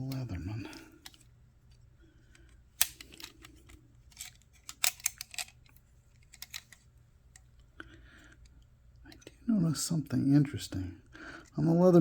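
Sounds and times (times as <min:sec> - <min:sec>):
multi-tool metal clicks and snaps: 0:02.3 - 0:07.6.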